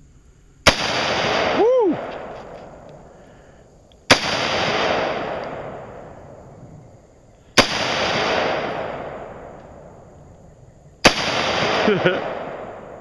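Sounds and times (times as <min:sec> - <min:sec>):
rifle shots: 0:00.6 - 0:02.8, 0:04.1 - 0:06.4, 0:07.6 - 0:10.0, 0:11.0 - 0:13.0.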